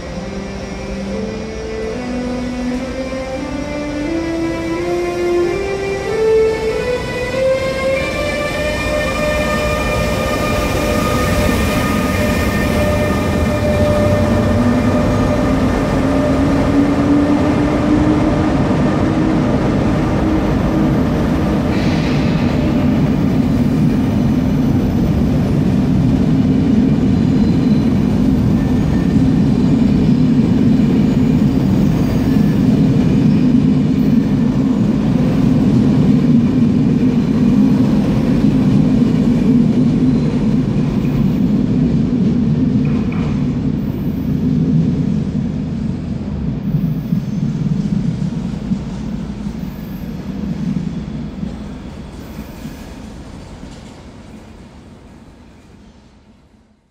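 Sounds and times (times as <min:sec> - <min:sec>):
train wheels rolling on rails: 0:05.2 - 0:56.8.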